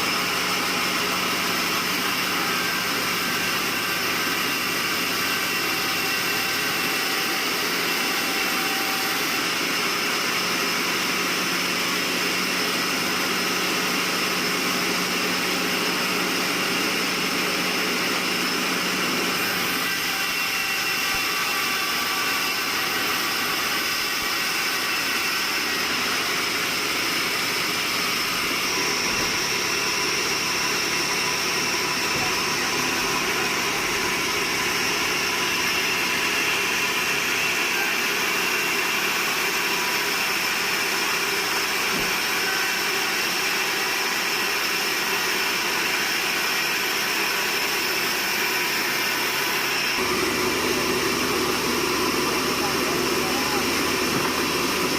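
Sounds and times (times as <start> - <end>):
sawmill machinery drone: 0.0 - 54.9.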